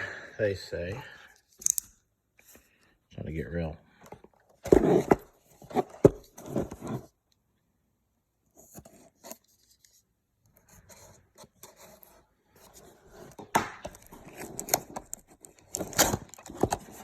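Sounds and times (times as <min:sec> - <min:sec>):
cards flicking and snapping: 0:01.6 - 0:02.0
cards rustling and sliding: 0:10.6 - 0:17.0.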